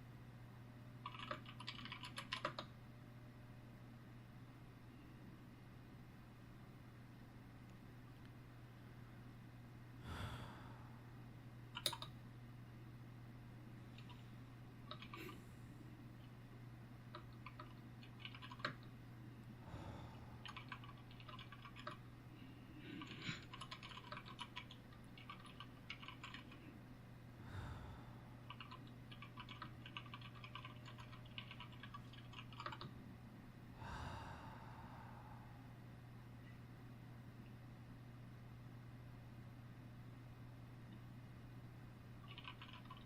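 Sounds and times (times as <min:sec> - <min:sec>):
keyboard typing: 0:01.0 - 0:02.7, 0:11.8 - 0:12.1, 0:14.9 - 0:15.4, 0:17.1 - 0:18.9, 0:20.4 - 0:22.0, 0:23.0 - 0:26.6, 0:28.4 - 0:33.0, 0:42.2 - 0:43.0
soft breath: 0:10.0 - 0:11.2, 0:19.6 - 0:20.6, 0:27.4 - 0:28.5, 0:33.7 - 0:35.9.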